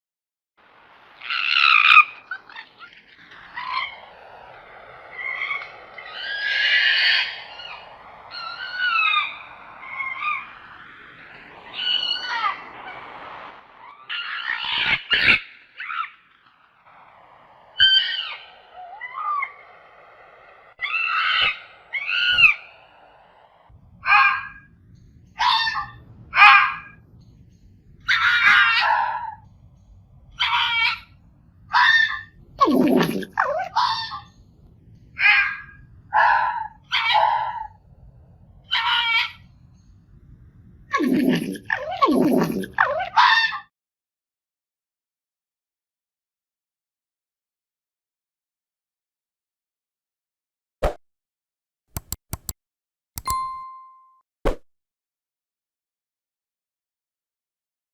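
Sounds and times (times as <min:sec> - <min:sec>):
fox yelping and screaming: 0:05.1 - 0:10.5, 0:13.9 - 0:16.2, 0:20.8 - 0:22.7, 0:25.4 - 0:26.9, 0:28.1 - 0:29.4, 0:30.4 - 0:31.1, 0:31.7 - 0:34.3, 0:35.2 - 0:37.8, 0:38.7 - 0:39.4, 0:40.9 - 0:43.7
fox barking: 0:35.2 - 0:37.8, 0:41.0 - 0:43.6.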